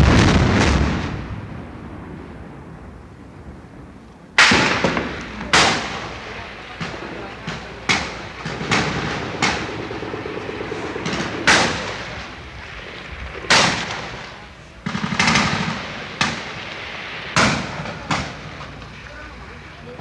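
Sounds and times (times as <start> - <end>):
echoing gunshots: 0.0 - 2.3, 4.4 - 19.5
crowd din: 4.6 - 20.0.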